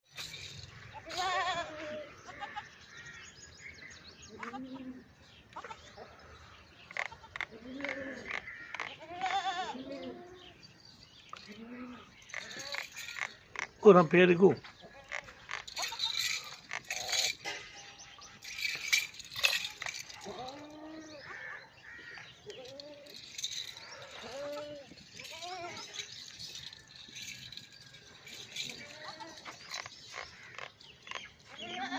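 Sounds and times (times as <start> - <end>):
goat bleating: 1.0 - 2.6, 7.1 - 10.4, 24.2 - 25.8, 31.6 - 31.9.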